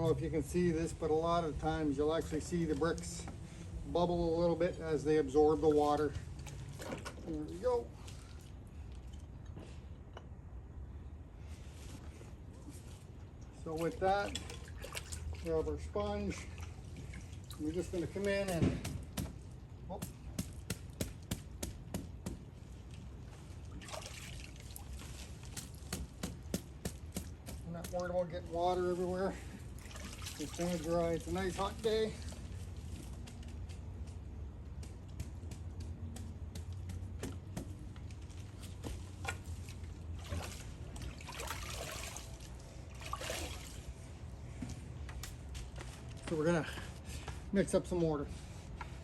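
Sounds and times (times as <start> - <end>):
water trickling and dripping: 13.1 - 18.6, 22.7 - 26.4, 27.4 - 33.0, 38.0 - 44.0.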